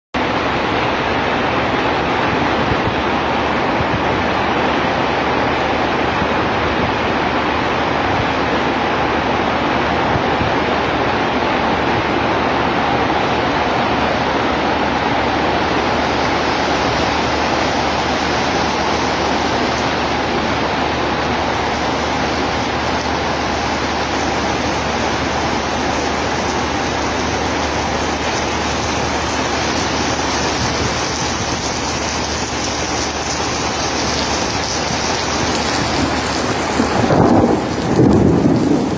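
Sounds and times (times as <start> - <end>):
heavy rain pouring: 0.2 - 38.9.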